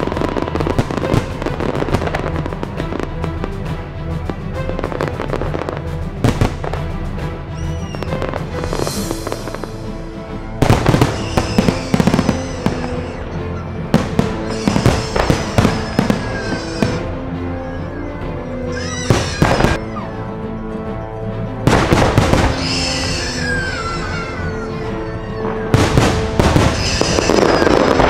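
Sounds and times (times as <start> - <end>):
fireworks bursting and crackling: 0.0 - 10.0, 10.6 - 17.1, 18.7 - 19.8, 21.6 - 28.0
music with steady tones: 0.0 - 28.0.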